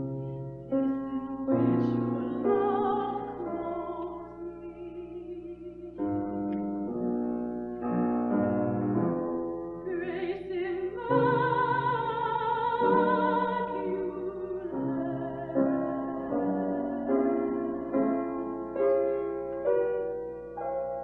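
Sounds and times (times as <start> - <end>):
piano accompaniment: 0.0 - 21.0
woman singing operatically: 0.7 - 6.3, 9.9 - 17.9.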